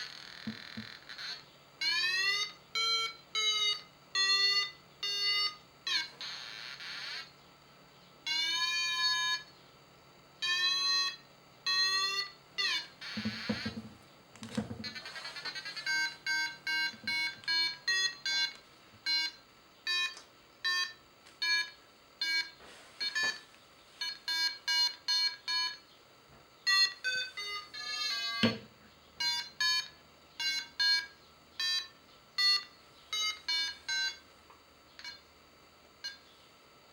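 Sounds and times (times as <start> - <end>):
buzzy electronic beeps: 0.0 - 7.3, 14.8 - 18.5
long held electronic tone: 0.0 - 7.4, 10.4 - 25.8.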